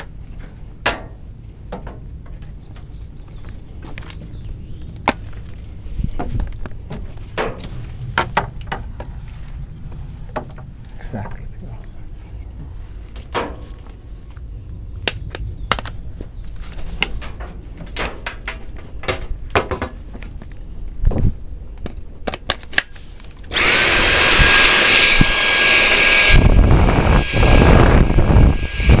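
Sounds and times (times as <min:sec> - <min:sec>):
electric drill drilling metal: 0:23.5 - 0:29.0.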